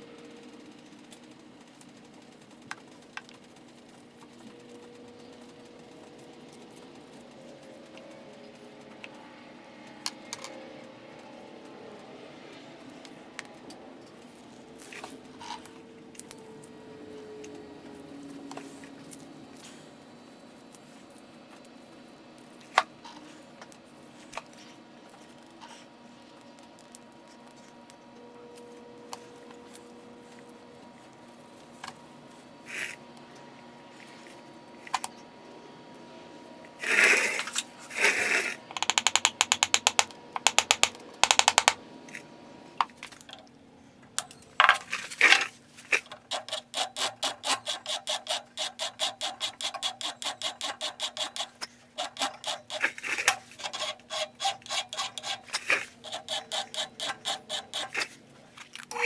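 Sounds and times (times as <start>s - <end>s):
back-and-forth scraping strokes: 28.5s - 35.4s, 36.3s - 38.7s, 44.8s - 59.0s.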